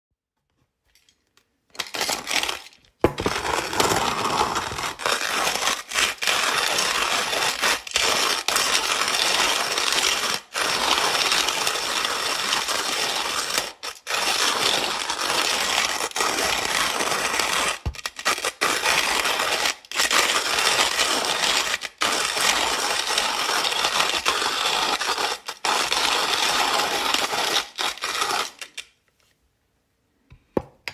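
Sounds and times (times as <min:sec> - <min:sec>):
manual coffee grinder crunching: 0:01.7 - 0:13.4.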